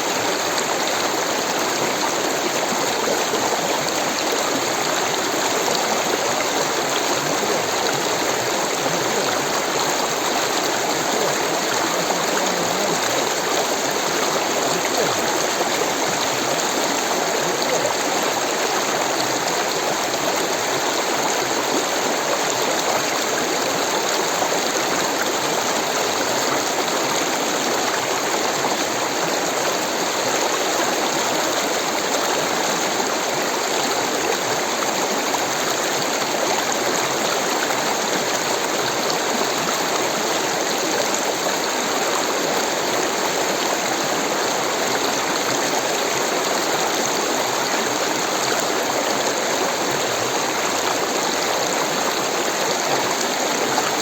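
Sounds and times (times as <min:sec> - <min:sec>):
stream water rushing: 0:00.0 - 0:54.0.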